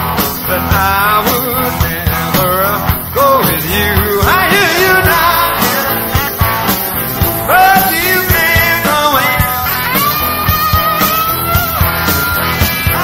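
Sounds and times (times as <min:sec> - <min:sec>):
drum hits: 0:00.0 - 0:13.0
live rock band playing: 0:00.0 - 0:13.0.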